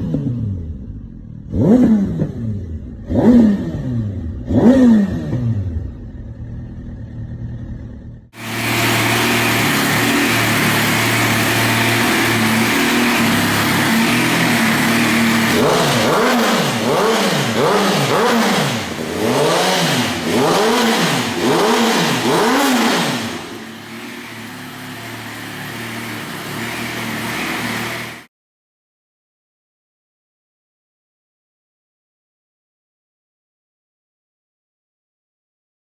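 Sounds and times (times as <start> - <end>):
motorcycle engine idling and revving: 0.0 - 28.3.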